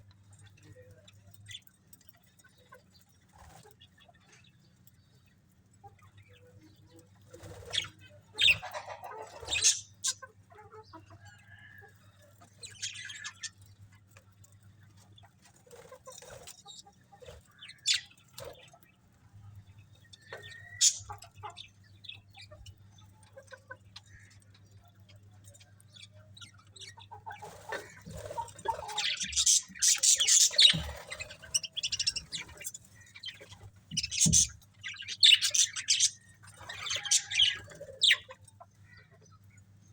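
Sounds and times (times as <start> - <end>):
budgerigars chirping: 7.4 - 10.3, 17.2 - 18.6, 20.2 - 22.6, 26.7 - 39.1.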